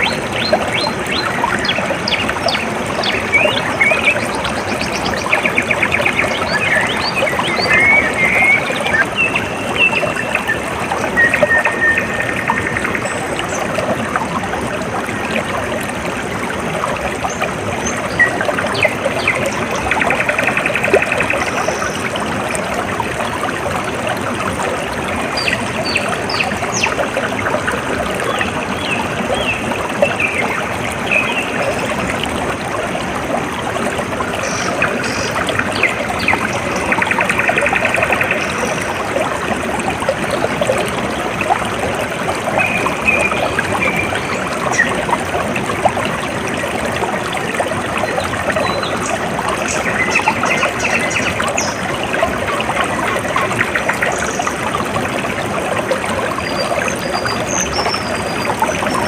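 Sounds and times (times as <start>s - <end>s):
water trickling in a stream: 0.0s - 59.0s.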